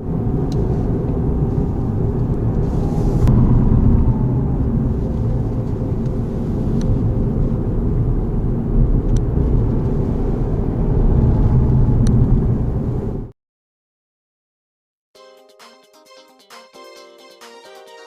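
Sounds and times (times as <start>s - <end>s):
road and engine rumble: 0.0s - 13.4s.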